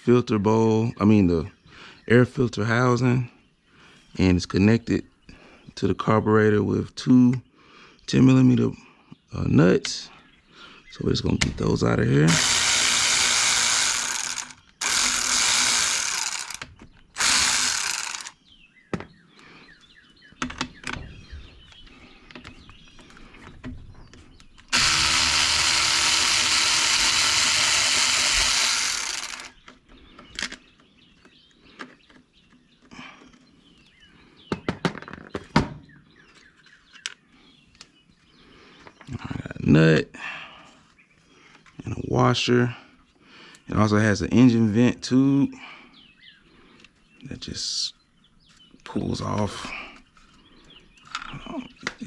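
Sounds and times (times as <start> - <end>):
power tool spinning nuts: 12.3 - 18.4, 24.7 - 29.6
metal parts clicking: 12.4 - 18.3.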